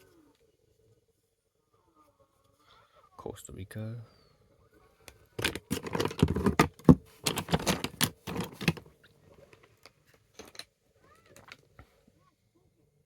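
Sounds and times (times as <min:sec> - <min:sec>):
fridge magnets clattering: 0:05.4 - 0:08.9.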